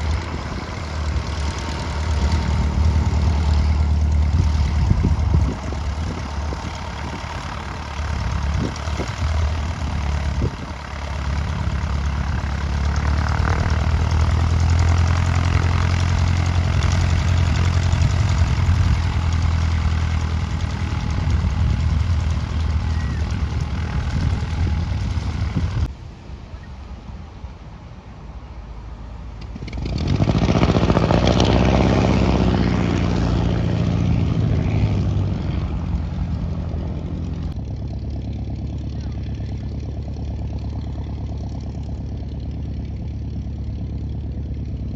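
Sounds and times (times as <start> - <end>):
propeller aircraft engine drone: 0.0 - 44.9.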